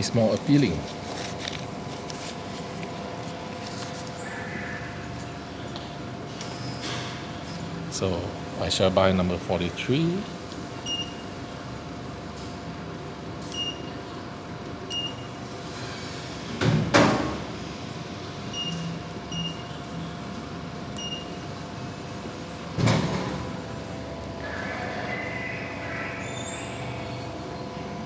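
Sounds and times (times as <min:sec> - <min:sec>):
keypad beeping: 0:10.8 - 0:11.2, 0:13.5 - 0:14.0, 0:14.9 - 0:15.3, 0:18.5 - 0:19.8, 0:20.9 - 0:21.4.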